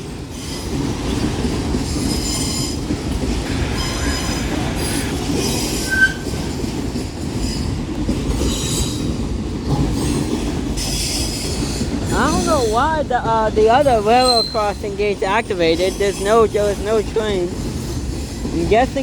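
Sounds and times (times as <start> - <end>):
train wheels rumbling on rails: 0.0 - 19.0
wheel squeals: 1.9 - 2.9, 3.5 - 6.4, 14.2 - 14.8.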